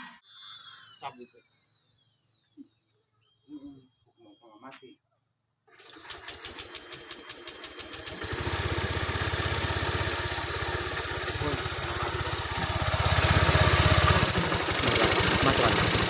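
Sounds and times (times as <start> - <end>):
scooter engine cranking and idling: 5.7 - 16.0.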